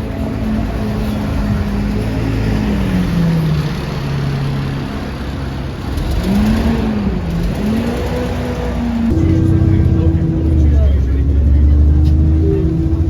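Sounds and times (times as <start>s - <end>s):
bus engine rumble: 0.0s - 13.0s
bus whine: 0.0s - 13.0s.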